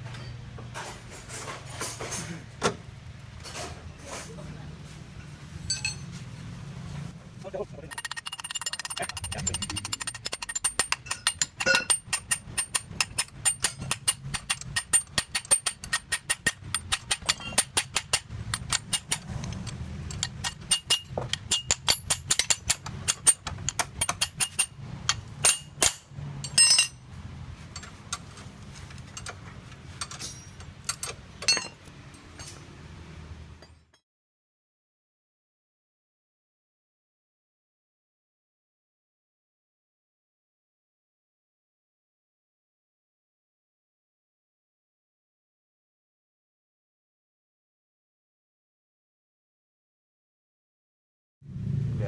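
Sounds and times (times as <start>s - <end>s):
rapid metallic tapping: 7.9s - 26.0s.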